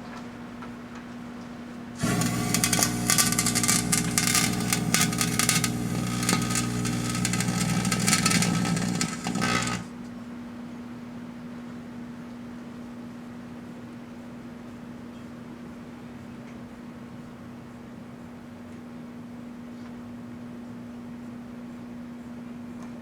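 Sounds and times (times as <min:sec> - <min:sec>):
microwave humming: 0:02.0 - 0:09.9.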